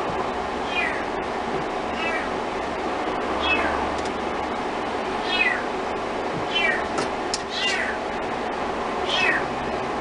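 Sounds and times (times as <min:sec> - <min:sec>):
kitten mewing: 0:00.6 - 0:01.1, 0:01.9 - 0:02.3, 0:03.4 - 0:03.8, 0:05.2 - 0:05.7, 0:06.5 - 0:06.9, 0:07.5 - 0:08.0, 0:09.0 - 0:09.5.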